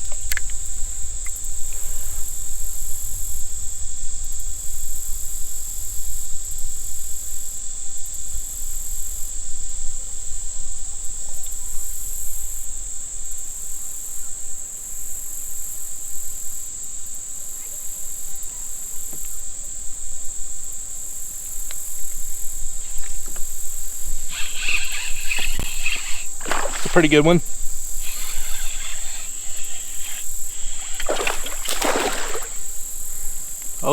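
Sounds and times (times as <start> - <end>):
insects shrill high tone: 21.9 - 33.9
pulsing insect buzz: 22.0 - 33.9.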